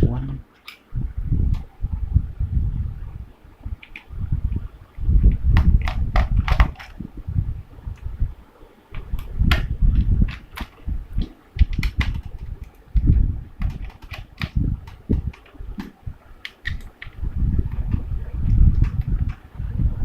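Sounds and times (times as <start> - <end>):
plastic clicks and taps: 9.0 - 19.4.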